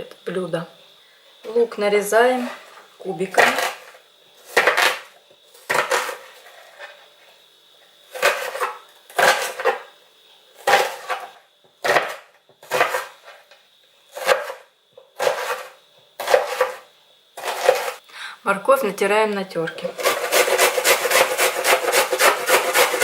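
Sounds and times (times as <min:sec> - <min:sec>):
kitchen knife dicing onion: 0:04.5 - 0:05.1, 0:05.7 - 0:06.2, 0:08.1 - 0:09.8, 0:10.6 - 0:13.1, 0:14.1 - 0:14.6, 0:15.2 - 0:16.8, 0:17.4 - 0:18.0, 0:19.9 - 0:23.0.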